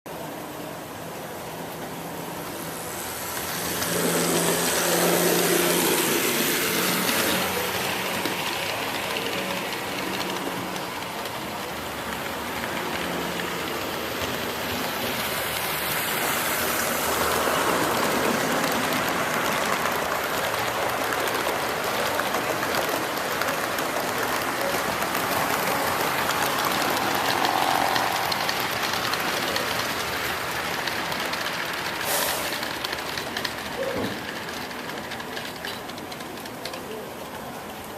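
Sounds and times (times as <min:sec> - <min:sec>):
model train wheels rolling: 0:00.1 - 0:37.9.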